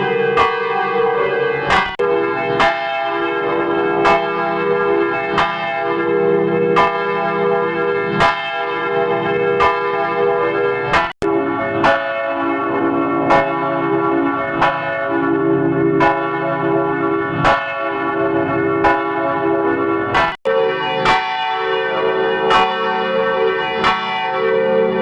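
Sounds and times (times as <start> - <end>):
church bell tolling: 0.0 - 25.0.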